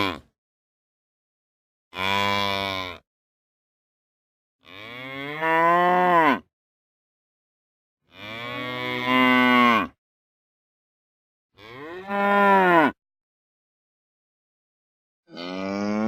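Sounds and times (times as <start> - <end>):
cow mooing: 2.0 - 3.0, 4.6 - 6.5, 8.1 - 10.0, 11.6 - 13.0, 15.3 - 16.0.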